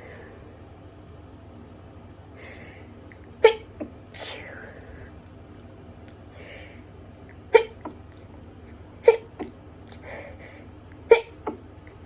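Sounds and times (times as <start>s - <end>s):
faint breaths: 0.0s - 0.6s, 2.3s - 3.0s, 6.3s - 7.0s, 9.9s - 10.8s.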